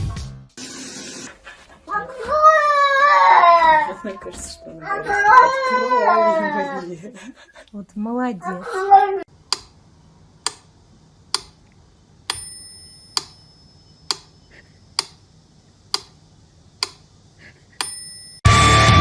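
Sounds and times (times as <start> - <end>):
small bell ding: 12.3 - 13.9, 17.8 - 18.5.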